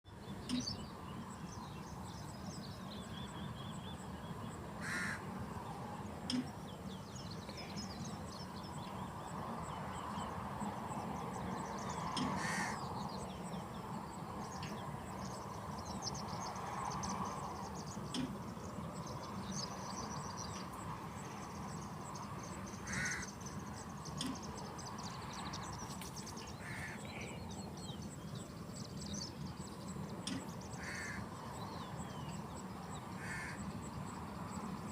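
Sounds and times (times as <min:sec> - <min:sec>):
loud short bird calls: 0:04.8 - 0:05.2, 0:12.0 - 0:12.8, 0:22.8 - 0:23.3, 0:26.6 - 0:27.6, 0:30.3 - 0:31.3, 0:33.2 - 0:33.7.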